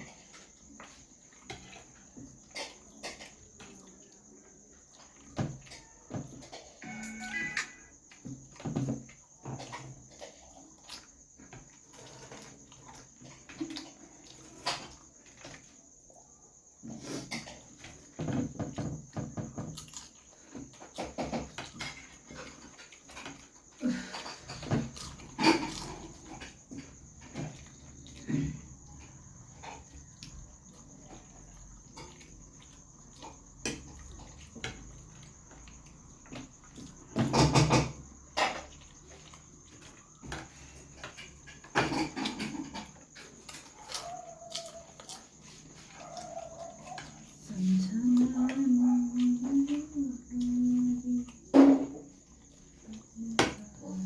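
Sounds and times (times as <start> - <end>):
steady high-pitched tone: 6.8 - 7.9
chewing and mouth noises: 19.8 - 37.1, 38.1 - 48.2.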